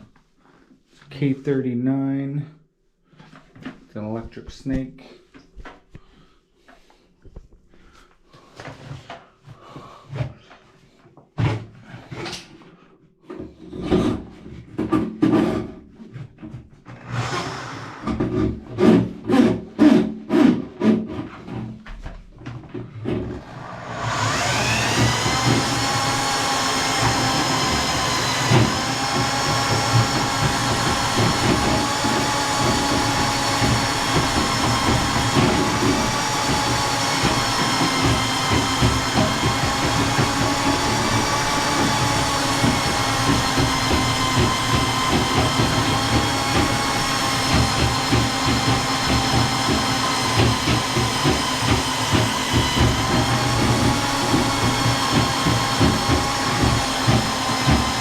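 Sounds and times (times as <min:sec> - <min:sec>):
drain snake motor whine: 0:23.4 - 0:58.0.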